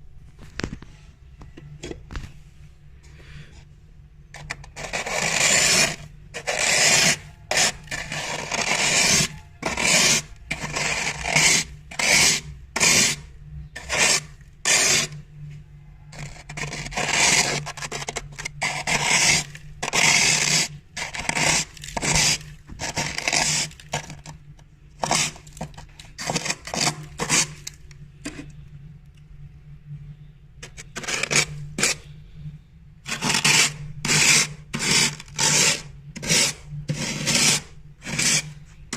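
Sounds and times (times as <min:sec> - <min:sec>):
glass scraping frost: 0:04.4 - 0:15.2, 0:16.2 - 0:24.3, 0:25.0 - 0:28.5, 0:30.6 - 0:32.1, 0:33.1 - 0:38.6.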